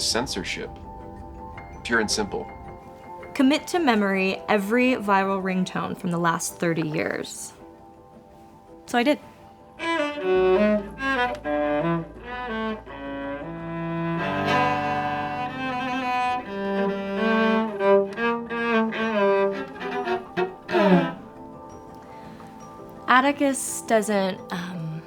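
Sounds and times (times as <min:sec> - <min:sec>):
solo cello: 0:09.7 - 0:22.5.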